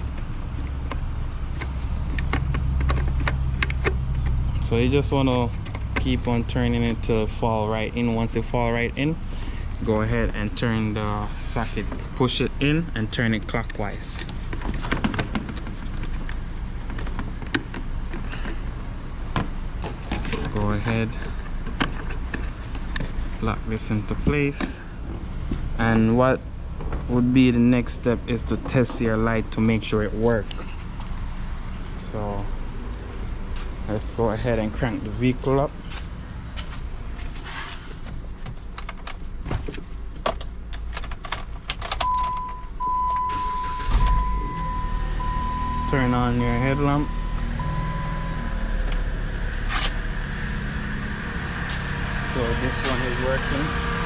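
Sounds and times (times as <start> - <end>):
dashboard warning beep: 42.0 - 49.0.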